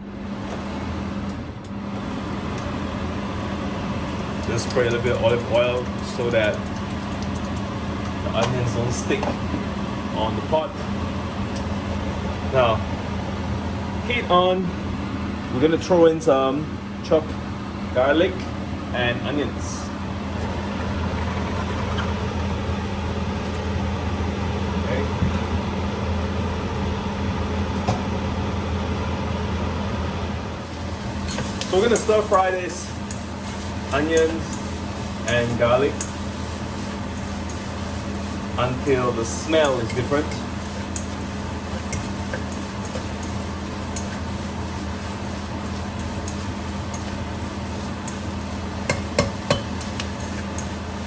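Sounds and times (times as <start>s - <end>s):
low mechanical hum: 0.0s - 51.0s
onions frying in oil: 1.8s - 15.8s, 21.9s - 51.0s
utensil knocking against pot: 48.9s - 49.8s.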